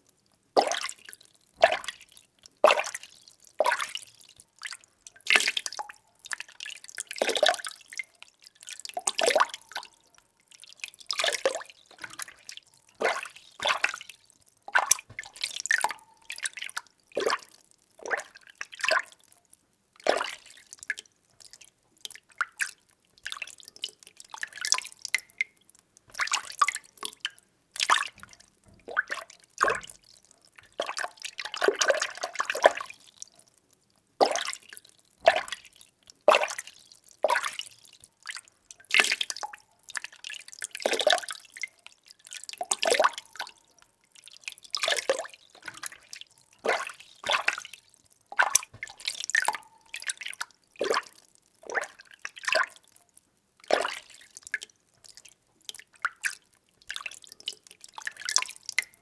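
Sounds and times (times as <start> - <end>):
water sloshing and splashing: 11.1 - 19.1, 26.1 - 32.9, 44.2 - 52.8.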